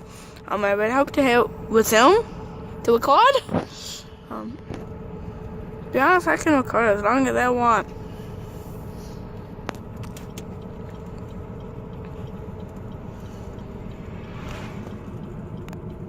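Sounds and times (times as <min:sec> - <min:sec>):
motor rumbling and humming: 0:00.0 - 0:16.0.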